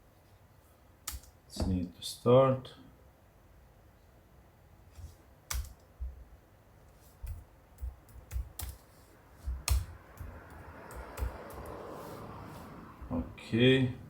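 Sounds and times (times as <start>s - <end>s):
laptop keys clicking: 1.1s - 1.4s, 5.5s - 6.1s, 7.2s - 11.8s.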